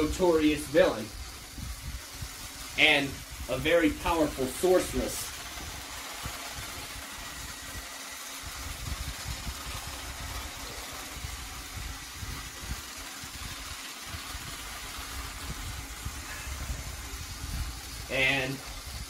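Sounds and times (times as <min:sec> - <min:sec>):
toy train motor clattering on track: 0:04.4 - 0:16.8.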